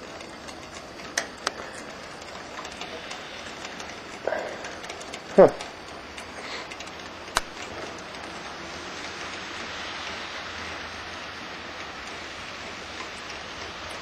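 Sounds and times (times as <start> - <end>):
snowstorm hiss: 0.0 - 14.0
sharp click: 7.3 - 7.5.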